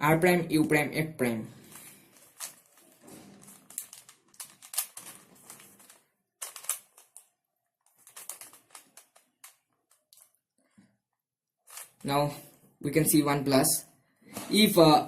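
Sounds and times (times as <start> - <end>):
puzzle cube layers clicking: 3.4 - 7.3, 7.9 - 10.4, 11.7 - 12.0.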